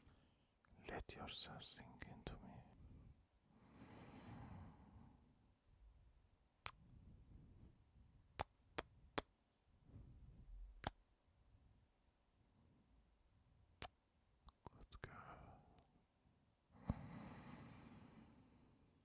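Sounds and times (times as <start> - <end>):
slow breathing: 3.5 - 5.2, 16.8 - 18.8
kissing lip smacks: 10.8 - 11.0, 13.8 - 14.7.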